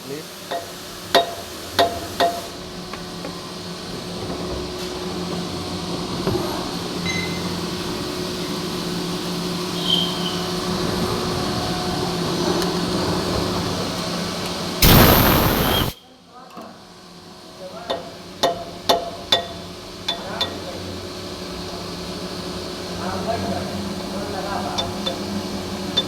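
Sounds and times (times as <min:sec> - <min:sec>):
loud rush of noise: 0:14.8 - 0:16.0.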